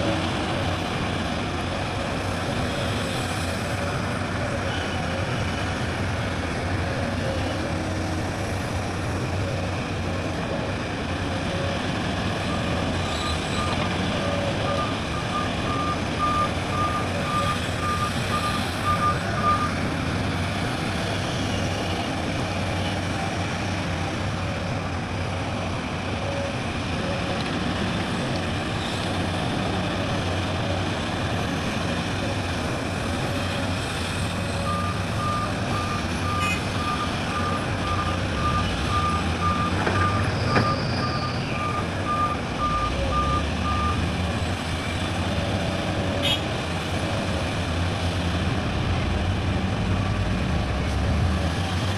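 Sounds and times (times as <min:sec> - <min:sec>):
diesel engines running: 0:00.0 - 0:51.9
reversing alarm beeping: 0:12.5 - 0:19.8, 0:34.6 - 0:44.1.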